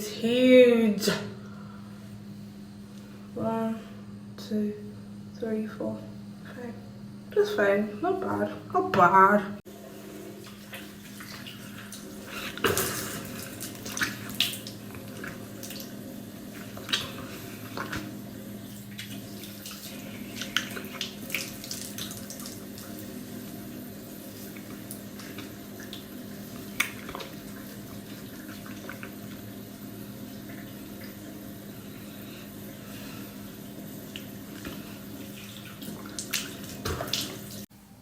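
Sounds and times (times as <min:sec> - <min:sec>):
tap water running into sink: 0:09.7 - 0:31.8, 0:33.5 - 0:37.7
water splashes: 0:09.8 - 0:29.5, 0:33.9 - 0:37.7.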